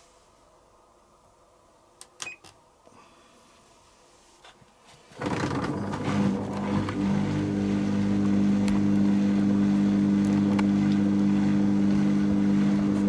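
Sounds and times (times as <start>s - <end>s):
washing machine humming: 5.0s - 13.0s.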